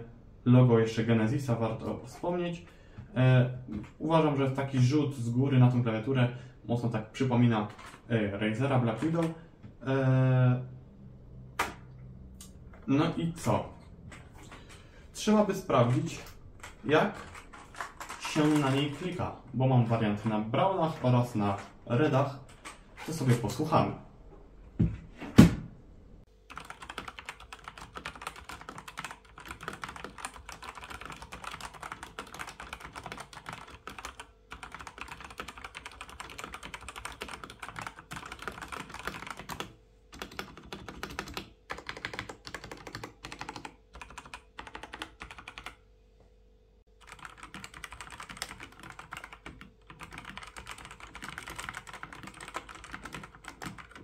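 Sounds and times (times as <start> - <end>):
mechanical keyboard typing: 15.8 - 19.3, 26.5 - 45.8, 47.0 - 54.0.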